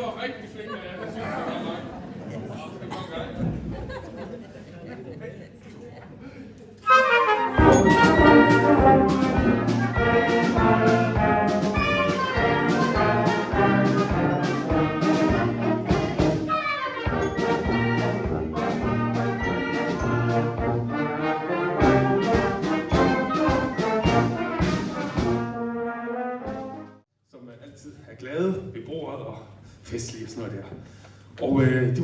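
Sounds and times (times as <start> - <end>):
wind band playing: 6.8 - 27.0.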